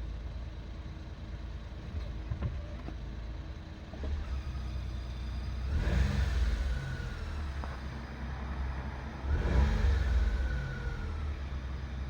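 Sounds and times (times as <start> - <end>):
small engine rumbling: 0.0 - 12.0.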